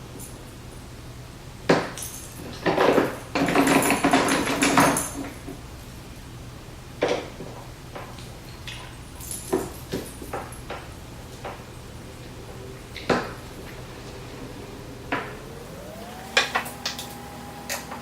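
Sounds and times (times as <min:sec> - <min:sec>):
metal parts clinking: 0:08.6 - 0:10.9.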